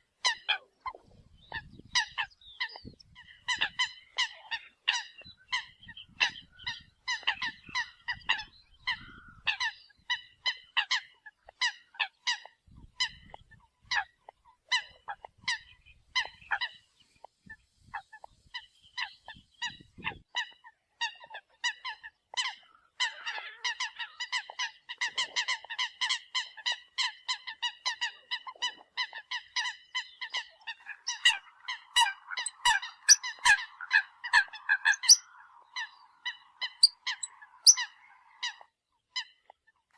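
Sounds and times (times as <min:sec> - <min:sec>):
coots honking calls: 0:20.4 - 0:39.5.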